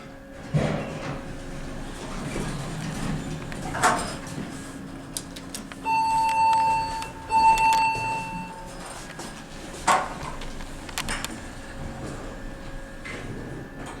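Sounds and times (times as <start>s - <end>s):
elevator beeps: 5.8s - 13.2s.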